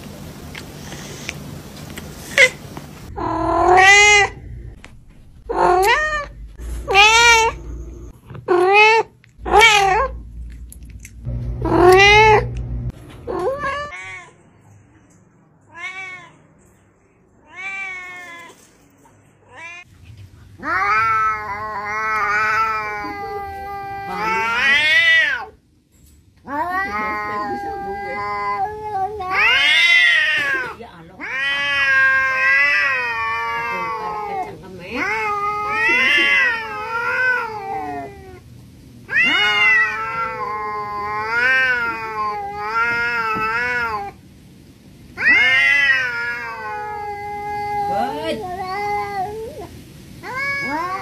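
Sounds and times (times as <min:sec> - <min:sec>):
cat meowing and yowling: 0:03.2 - 0:04.4, 0:05.5 - 0:07.6, 0:08.5 - 0:10.2, 0:11.7 - 0:12.5, 0:13.3 - 0:14.4, 0:20.6 - 0:25.5, 0:26.5 - 0:38.4, 0:39.1 - 0:44.2, 0:45.2 - 0:51.0.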